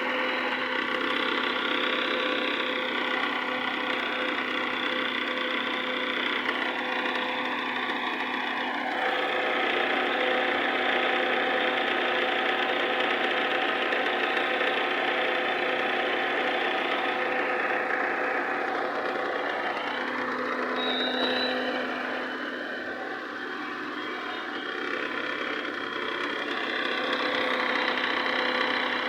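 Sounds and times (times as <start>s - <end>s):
car engine running: 0.0s - 29.0s
humming tones: 16.0s - 24.8s.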